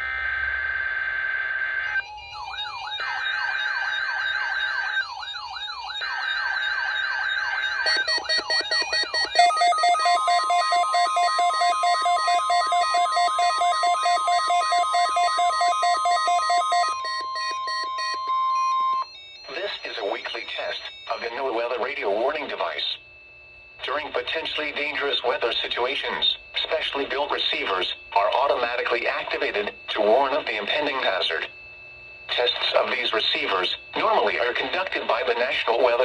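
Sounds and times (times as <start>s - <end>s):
siren-like wails: 1.8s - 21.4s
steady high alarm tone: 2.1s - 23.2s
rapid pulsing beeps: 7.9s - 18.8s
weather radio warning tone: 8.8s - 17.0s.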